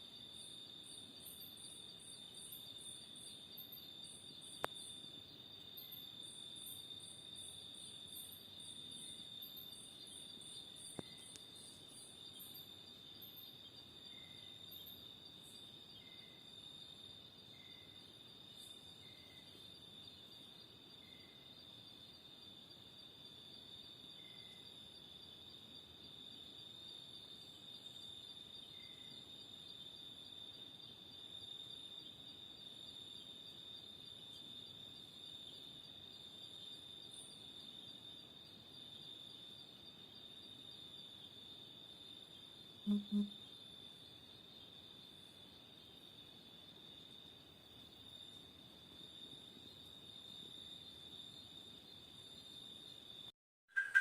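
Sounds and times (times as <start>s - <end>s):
soft short chirps: 42.9s - 43.3s
cicada buzzing: 42.9s - 43.4s, 53.7s - 54.0s.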